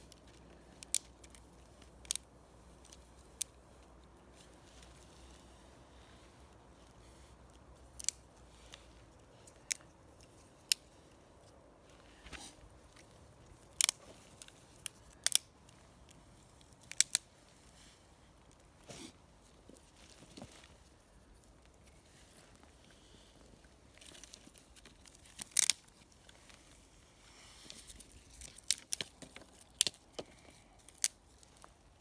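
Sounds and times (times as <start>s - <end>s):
dry wood snapping and crackling: 0.0s - 4.0s, 7.5s - 8.2s, 9.4s - 11.2s, 12.8s - 17.7s, 23.9s - 26.7s, 27.7s - 32.0s.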